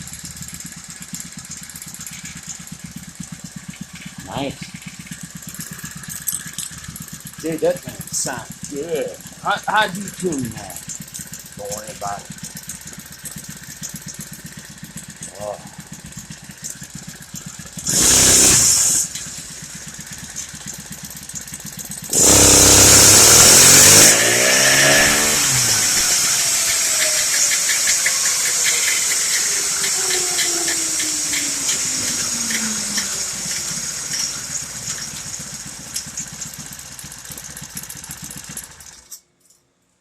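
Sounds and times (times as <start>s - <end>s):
engine at full throttle: 0.0s - 39.1s
small engine idling: 0.0s - 39.6s
falling whine: 22.1s - 35.2s.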